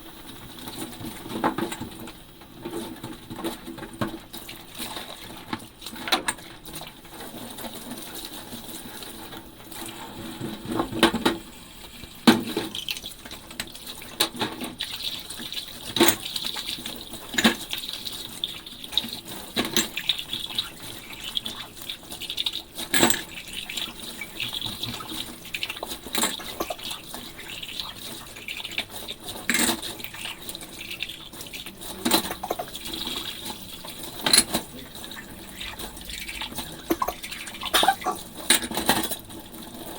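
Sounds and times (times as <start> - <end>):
tap water running and splashing: 0.0 - 39.9
dishes clinking in a sink: 12.2 - 21.9, 22.8 - 39.9.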